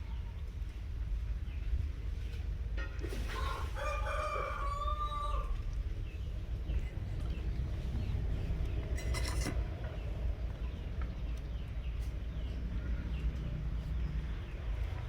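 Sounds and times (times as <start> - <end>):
small birds chirping: 5.8 - 15.0.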